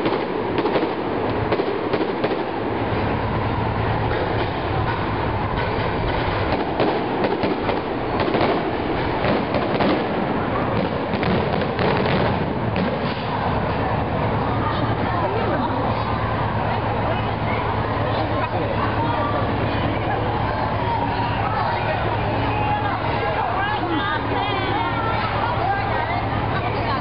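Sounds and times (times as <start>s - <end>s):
fireworks crackling: 0.0s - 27.0s.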